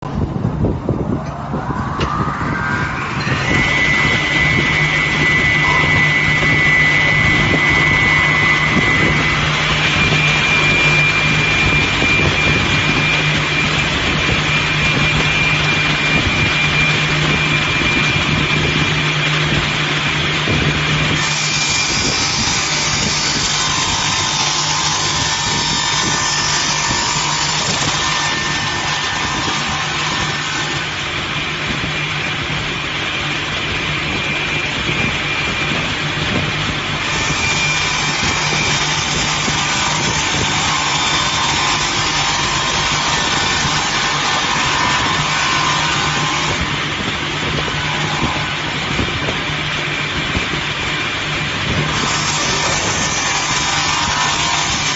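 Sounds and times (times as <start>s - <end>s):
rip saw motor hum: 1.1s - 31.2s
saw blades cutting wood: 1.2s - 32.4s, 34.8s - 49.1s, 51.8s - 54.9s.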